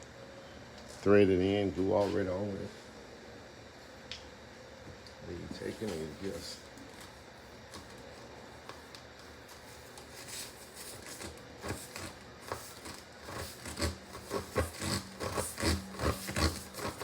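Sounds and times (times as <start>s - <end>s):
tire plug tool scraping rubber: 11.1s - 17.0s.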